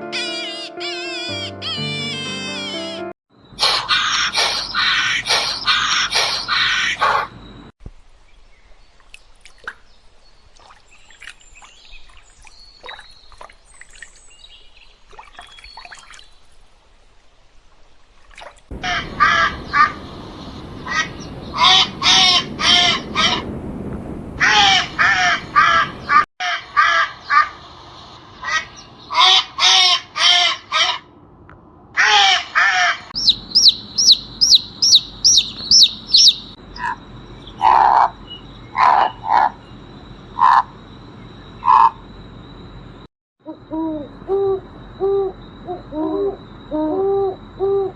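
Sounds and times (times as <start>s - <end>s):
harsh bird calls: 3.5s - 7.4s, 18.7s - 27.7s, 32.0s - 39.8s
high rising whistled bird notes: 18.7s - 26.3s
lower single bird calls: 18.8s - 26.2s, 33.2s - 37.0s.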